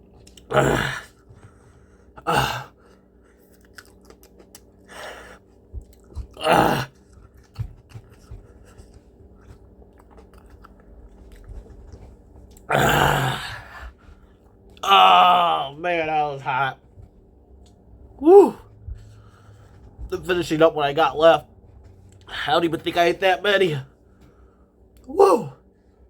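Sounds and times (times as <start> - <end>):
chewing with wet clicks: 0.2 - 0.5, 3.4 - 4.9, 5.8 - 6.4, 7.0 - 12.7.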